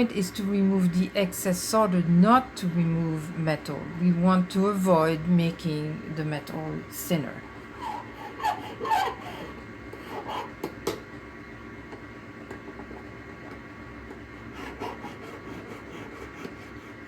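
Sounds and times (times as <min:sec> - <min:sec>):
hand file rasping on metal: 0:07.7 - 0:10.5, 0:14.5 - 0:17.0.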